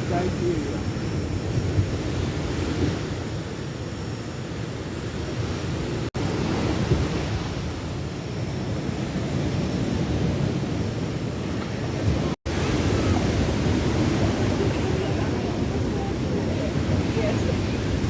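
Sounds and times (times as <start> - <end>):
ocean surf washing onto beach: 0.0 - 18.0
wind on microphone: 0.0 - 18.0.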